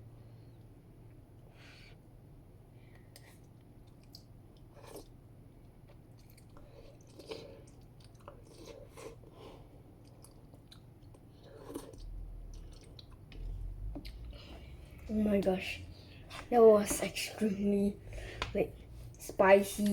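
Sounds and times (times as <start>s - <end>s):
person chewing food: 2.8s - 15.1s.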